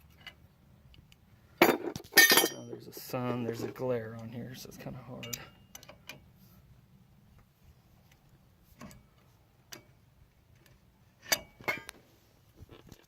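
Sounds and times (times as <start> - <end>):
metallic clicks and clinks: 5.2 - 6.2.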